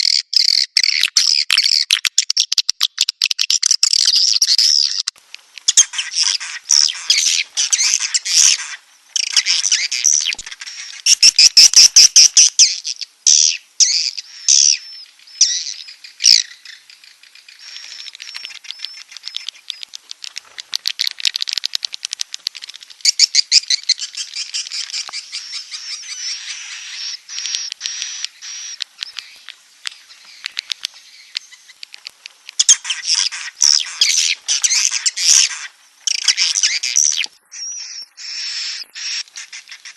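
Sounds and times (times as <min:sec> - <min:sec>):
high-pitched bird twittering: 0:05.7 - 0:20.0, 0:22.6 - 0:31.9, 0:32.6 - 0:39.9
fast clicks: 0:17.8 - 0:23.3, 0:27.4 - 0:37.3.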